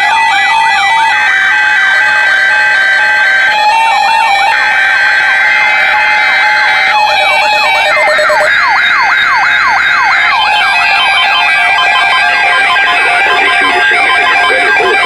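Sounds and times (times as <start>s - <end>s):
siren-like pitch sweeps: 7.0s - 15.0s
steady alert tones: 10.4s - 15.0s.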